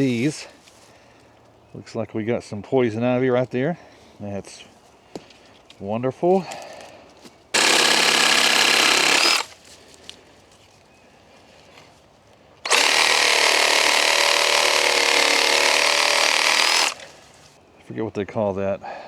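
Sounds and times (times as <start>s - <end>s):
reciprocating saw cutting brush: 7.6s - 9.6s, 12.7s - 17.5s.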